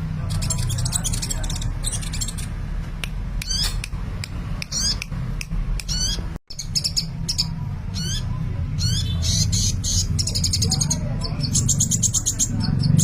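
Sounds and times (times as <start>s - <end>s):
sunbird singing: 0.2s - 2.5s, 5.8s - 13.0s.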